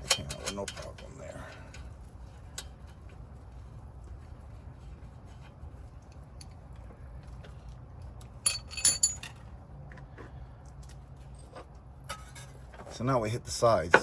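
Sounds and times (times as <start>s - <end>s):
metal clinking: 8.4s - 9.4s.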